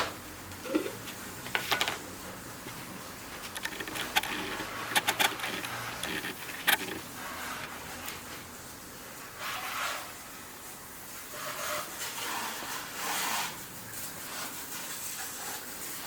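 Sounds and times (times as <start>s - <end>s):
sharp clicks and knocks: 3.4s - 7.8s
scraping rub: 3.4s - 8.2s, 9.4s - 10.2s, 11.3s - 16.0s.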